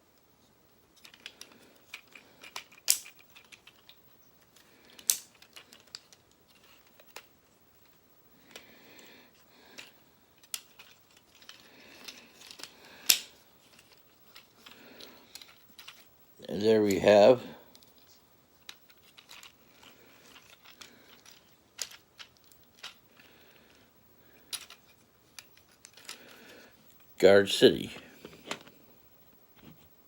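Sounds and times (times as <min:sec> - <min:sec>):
plastic toy parts clicking: 0:01.0 - 0:07.3, 0:09.8 - 0:16.1, 0:18.6 - 0:23.3, 0:24.5 - 0:26.2
sharp plastic snaps: 0:12.6 - 0:13.3.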